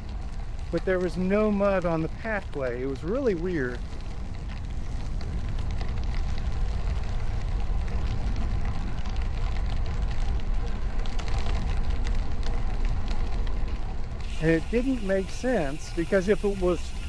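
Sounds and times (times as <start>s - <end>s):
bicycle rolling noise: 0.0s - 17.0s
wind buffeting microphone: 3.7s - 17.0s.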